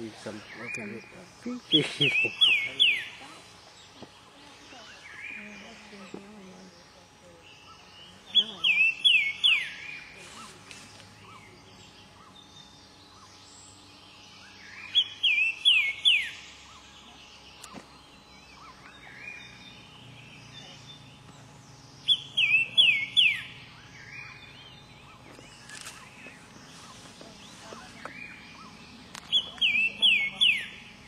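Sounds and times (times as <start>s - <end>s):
other birds calling: 0.0s - 31.0s
songbird singing falling notes: 20.1s - 30.9s.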